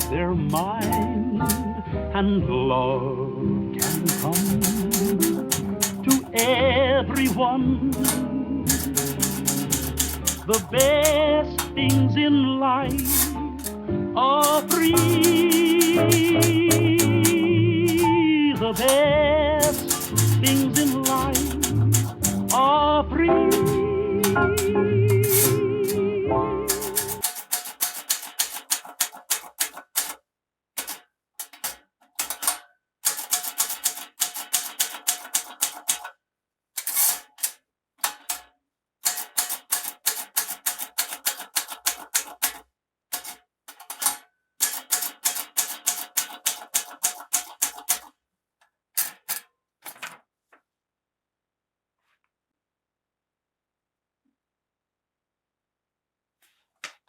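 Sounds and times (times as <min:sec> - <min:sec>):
manual typewriter keys striking: 0:00.0 - 0:01.7, 0:03.8 - 0:12.1, 0:12.9 - 0:13.8, 0:14.4 - 0:22.8, 0:23.5 - 0:26.0, 0:26.7 - 0:30.2, 0:30.8 - 0:36.1, 0:36.8 - 0:48.1, 0:49.0 - 0:50.2.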